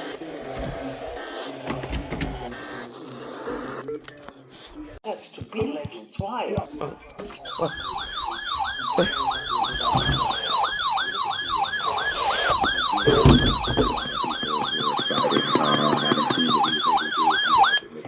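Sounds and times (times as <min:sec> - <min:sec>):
electronic siren yelping: 0:07.2 - 0:18.0.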